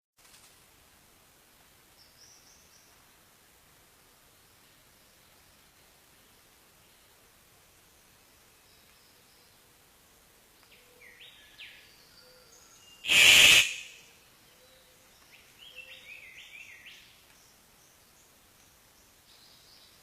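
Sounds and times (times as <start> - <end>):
harsh bird call burst: 13.0 - 14.0
birds calling: 13.0 - 14.7.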